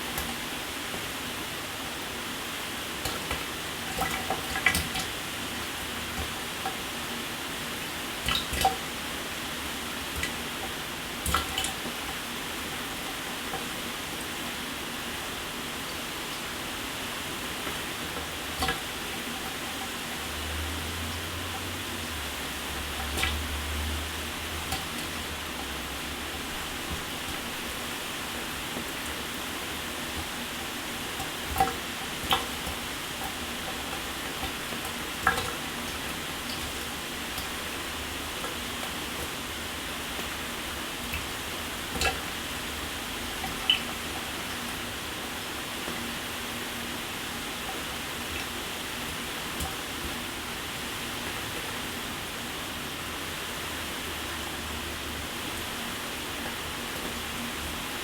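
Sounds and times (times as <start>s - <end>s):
shower water running: 0.0s - 58.0s
splashes and drips: 2.8s - 14.8s, 15.5s - 58.0s.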